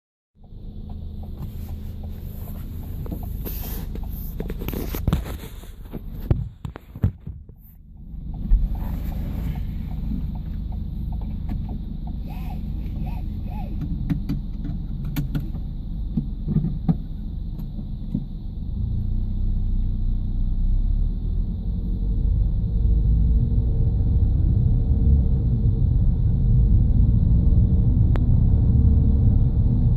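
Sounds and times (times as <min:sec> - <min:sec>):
car low rumble: 0:00.4 - 0:29.9.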